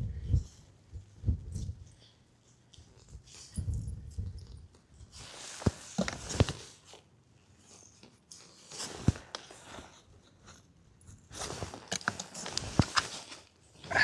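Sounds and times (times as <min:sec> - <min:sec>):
crunching and scraping in soil: 0:03.0 - 0:07.0, 0:08.4 - 0:14.0.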